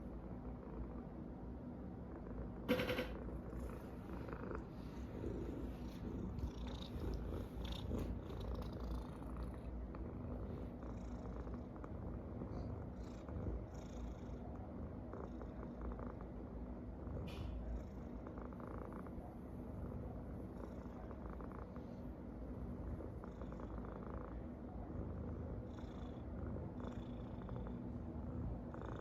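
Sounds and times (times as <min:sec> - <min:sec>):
cat snoring: 0:03.5 - 0:16.3, 0:22.8 - 0:29.0.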